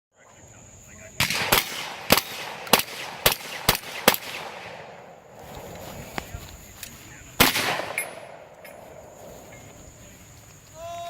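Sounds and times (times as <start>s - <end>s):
shotgun shots with echo: 1.2s - 5.1s, 7.4s - 8.5s.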